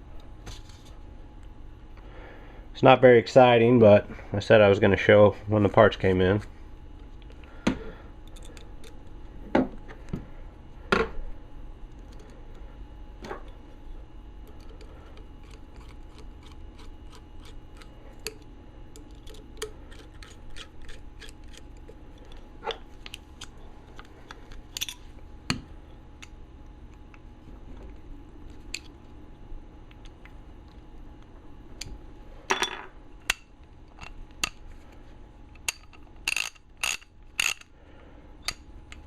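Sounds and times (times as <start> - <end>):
ratchet parts clicking: 35.7 - 37.7.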